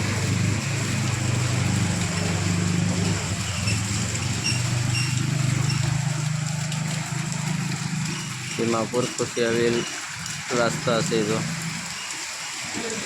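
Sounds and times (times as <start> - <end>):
vehicle engine running: 0.0 - 8.6.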